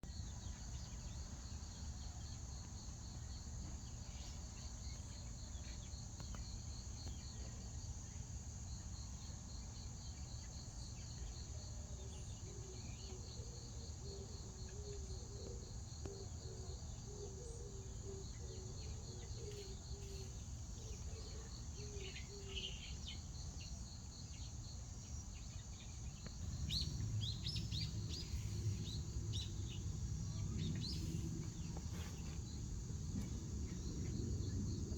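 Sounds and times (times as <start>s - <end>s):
insects trilling: 0.1s - 34.9s
bird chirps: 26.4s - 32.4s
low rumble: 26.4s - 34.9s.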